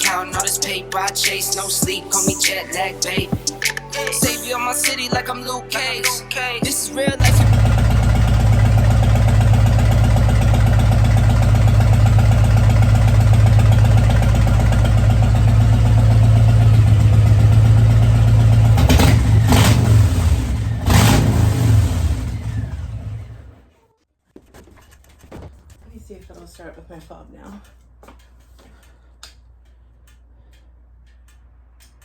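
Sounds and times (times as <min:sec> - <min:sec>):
motorcycle engine idling: 0:07.1 - 0:23.7.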